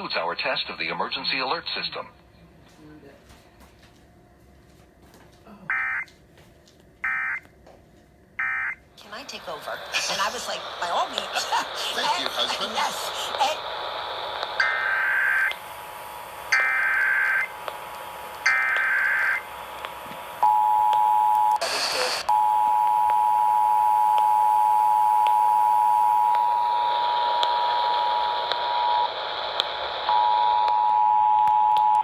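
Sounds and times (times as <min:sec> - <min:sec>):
screeching data bursts: 0:14.6 - 0:15.6.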